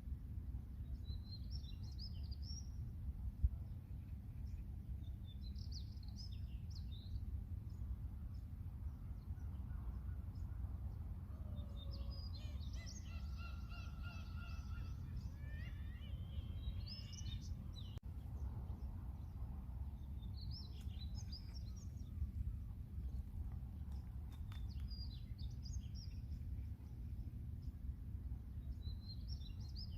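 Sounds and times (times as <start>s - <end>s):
low outdoor rumble: 0.0s - 29.9s
birds chirping and crying: 11.5s - 17.9s.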